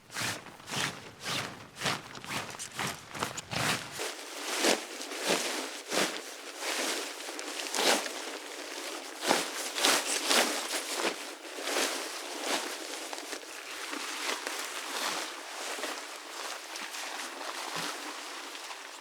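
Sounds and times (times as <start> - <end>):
footsteps crunching on dry ground: 0.0 - 11.3.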